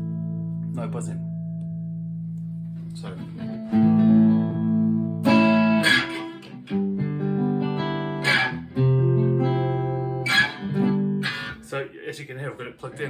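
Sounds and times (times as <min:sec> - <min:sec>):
electric acoustic guitar strumming chords: 0:02.9 - 0:11.7.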